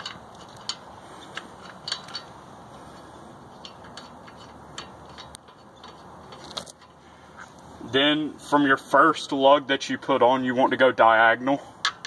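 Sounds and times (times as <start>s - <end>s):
lug nuts clicking on wheel studs: 0.0s - 7.6s, 11.8s - 12.0s.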